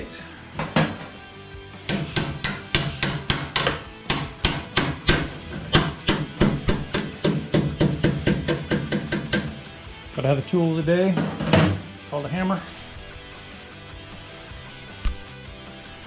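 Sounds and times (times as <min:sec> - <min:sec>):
hammer blows on metal: 0:01.9 - 0:09.6.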